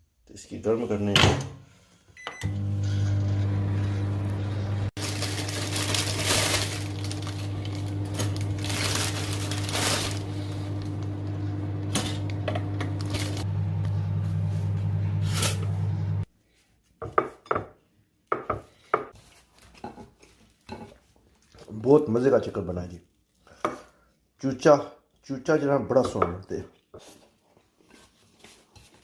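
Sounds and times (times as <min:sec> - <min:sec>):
microwave oven humming: 0:02.2 - 0:16.3.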